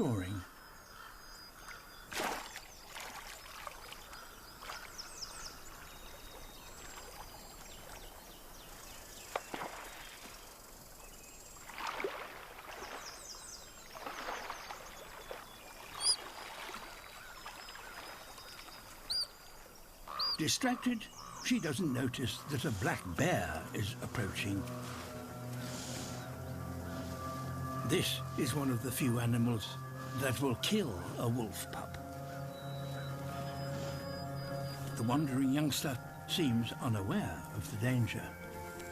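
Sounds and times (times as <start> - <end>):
running water noise: 2.1 - 10.6, 11.5 - 20.2.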